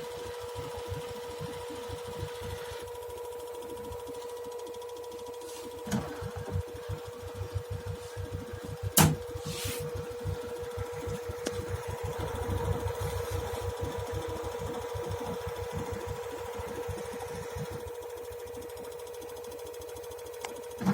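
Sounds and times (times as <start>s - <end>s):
washing machine humming: 0.0s - 20.9s
sharp click: 9.0s - 9.2s.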